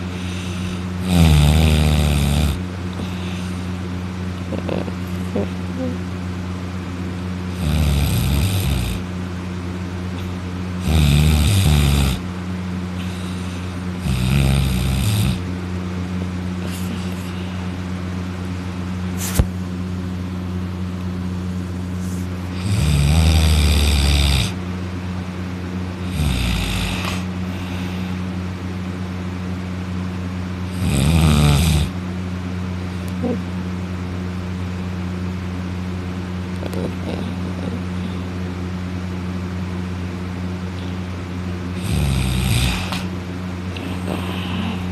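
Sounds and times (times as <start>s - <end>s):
man snoring loudly: 0.0s - 3.7s, 7.5s - 9.1s, 10.8s - 12.3s, 13.0s - 15.5s, 22.5s - 24.6s, 26.0s - 27.6s, 30.7s - 32.0s, 41.8s - 43.1s, 43.7s - 44.9s
steady low hum: 0.0s - 44.9s.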